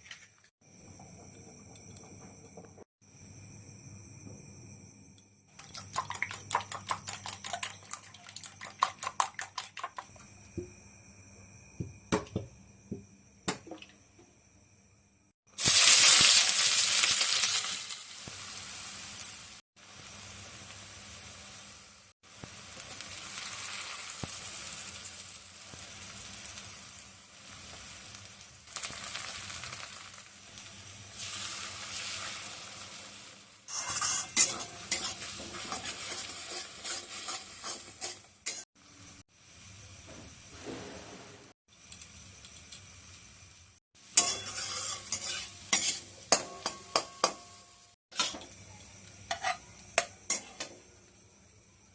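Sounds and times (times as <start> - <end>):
eggs sizzling in hot oil: 5.5 - 10.7, 15.5 - 40.4, 41.6 - 51.9
spatula scraping pan: 33.7 - 38.7, 44.2 - 46.8, 49.3 - 50.7.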